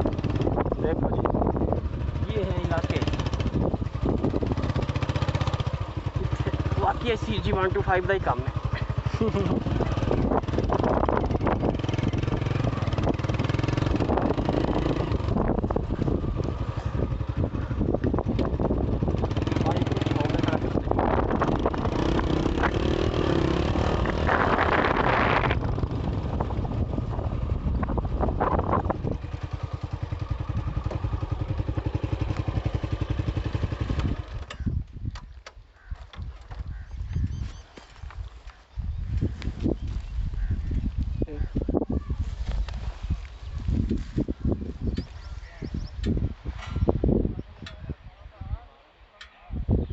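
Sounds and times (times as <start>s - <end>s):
motorcycle engine running: 0.0s - 35.1s.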